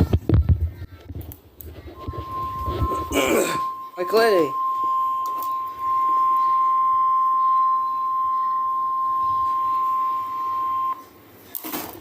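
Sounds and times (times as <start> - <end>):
high single-pitch warning beep: 2.0 - 11.0.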